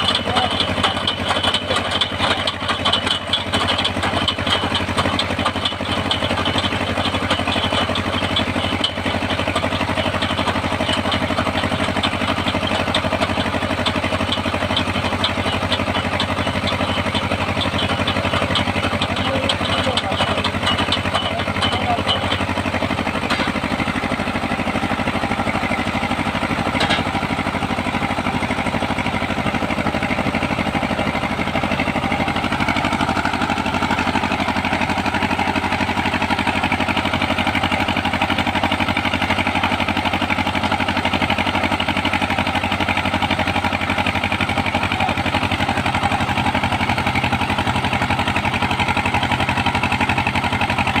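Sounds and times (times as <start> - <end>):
boring machine engine running: 0.0 - 51.0.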